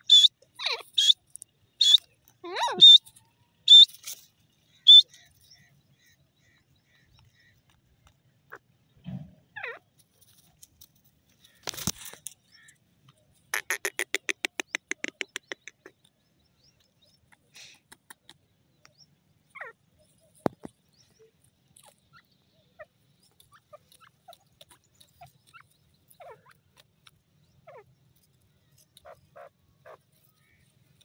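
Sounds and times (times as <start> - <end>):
francolin calling: 0.0 - 7.7, 18.8 - 31.0.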